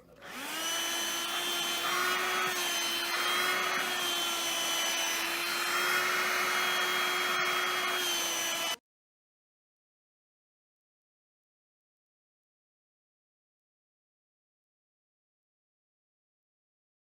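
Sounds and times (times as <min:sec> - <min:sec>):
electric motor whining: 0:00.2 - 0:08.8.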